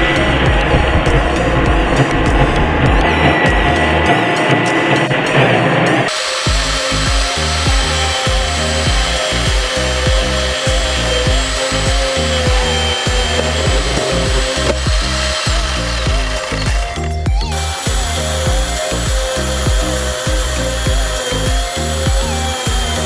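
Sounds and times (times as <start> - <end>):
background music with bass line: 0.0 - 23.0
chainsaw running: 6.1 - 23.0.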